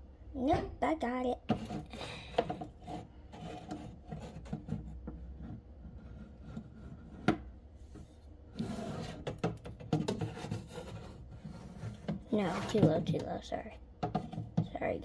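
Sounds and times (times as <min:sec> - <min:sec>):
scraping rub: 0:01.5 - 0:09.4, 0:10.0 - 0:13.1.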